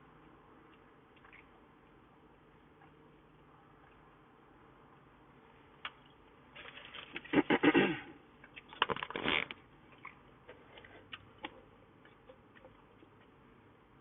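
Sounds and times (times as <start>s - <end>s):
crunching while eating: 6.5s - 13.4s.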